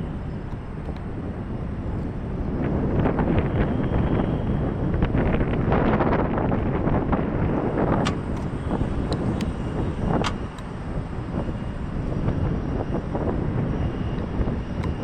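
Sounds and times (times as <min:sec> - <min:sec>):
wind buffeting microphone: 0:00.0 - 0:15.0
sharp clicks: 0:00.3 - 0:01.1, 0:08.0 - 0:10.8, 0:14.8 - 0:15.0.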